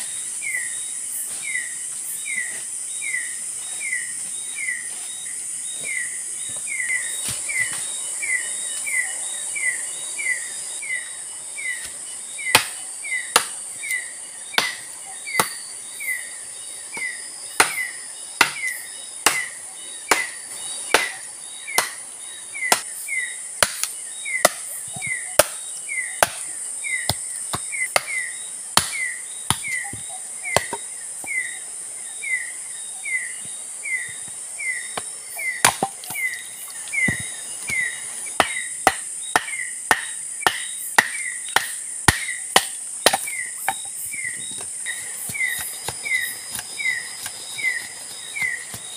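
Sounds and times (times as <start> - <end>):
high insect drone: 0.0 - 48.9
tool striking wood: 17.6 - 19.5, 20.1 - 21.2, 35.0 - 35.9, 37.0 - 43.9.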